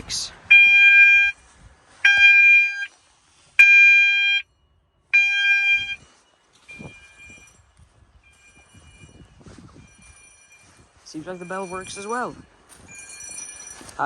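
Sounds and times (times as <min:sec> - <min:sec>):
fire alarm pulsing tone: 0:00.5 - 0:01.4, 0:02.0 - 0:02.9, 0:03.6 - 0:07.6.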